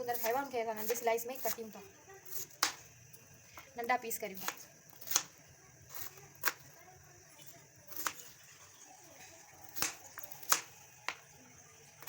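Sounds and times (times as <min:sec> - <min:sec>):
knife chopping on cutting board: 0:00.1 - 0:01.6, 0:02.2 - 0:02.8, 0:04.4 - 0:05.3, 0:09.6 - 0:11.2.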